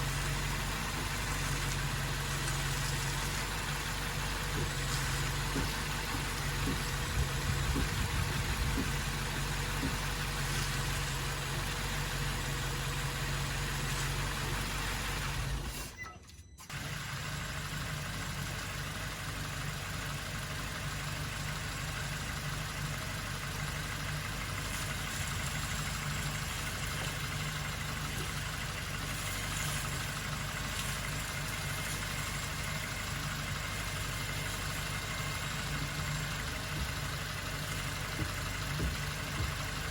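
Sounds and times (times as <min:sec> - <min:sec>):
car engine running: 0:00.0 - 0:16.0, 0:16.7 - 0:39.9.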